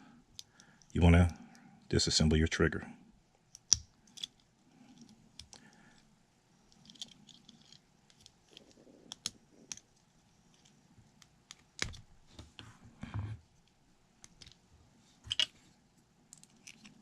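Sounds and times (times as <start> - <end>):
pistol parts clicking and scraping: 3.5 - 12.1, 15.2 - 15.6.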